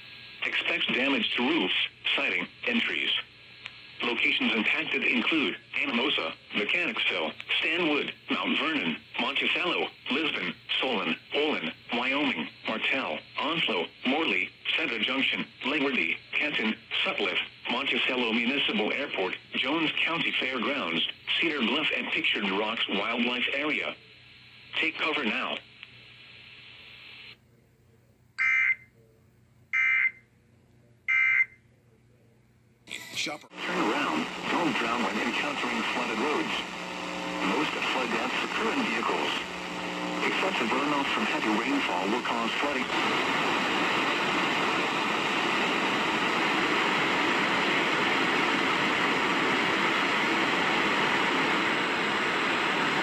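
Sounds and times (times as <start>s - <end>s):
radio static hiss: 0.0s - 27.4s, 32.9s - 53.0s
steady hiss: 33.6s - 53.0s.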